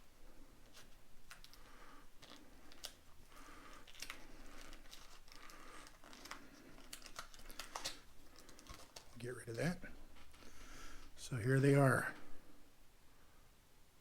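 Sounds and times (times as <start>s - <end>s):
packaging crinkling and tearing: 0.6s - 11.2s.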